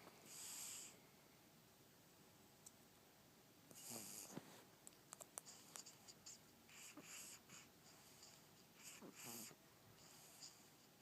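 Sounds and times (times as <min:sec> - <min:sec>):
baby snoring: 0:00.3 - 0:01.0, 0:03.7 - 0:04.4, 0:05.5 - 0:10.7.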